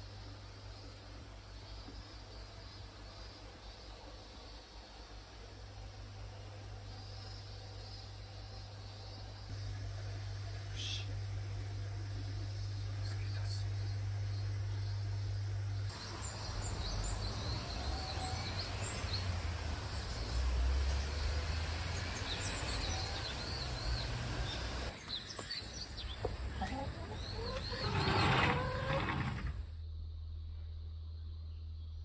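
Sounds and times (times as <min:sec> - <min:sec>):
small birds chirping: 0:10.4 - 0:29.4.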